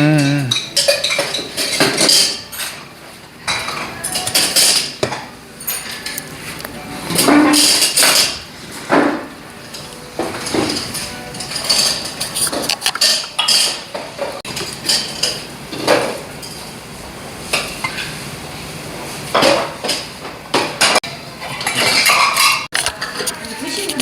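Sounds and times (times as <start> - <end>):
cutlery clinking on plates: 0.1 - 16.6, 19.3 - 24.0.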